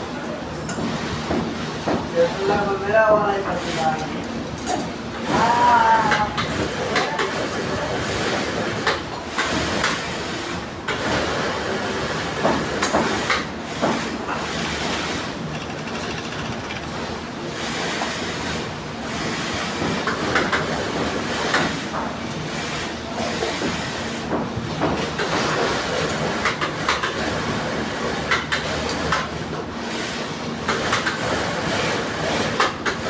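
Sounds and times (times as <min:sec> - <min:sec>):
sewing machine running: 0:14.5 - 0:17.3.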